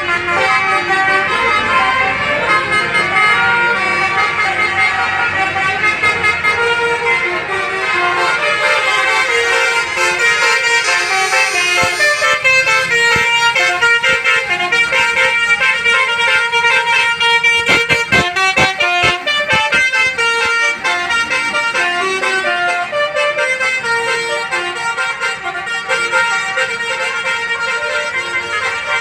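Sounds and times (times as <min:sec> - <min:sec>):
musical air horn melody: 0:00.0 - 0:29.0
sharp knocks: 0:17.6 - 0:20.6.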